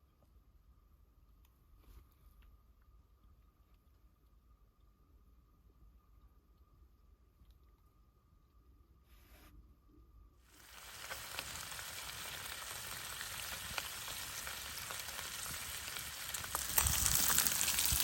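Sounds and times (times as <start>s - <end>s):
bacon sizzling and popping: 10.5s - 18.0s.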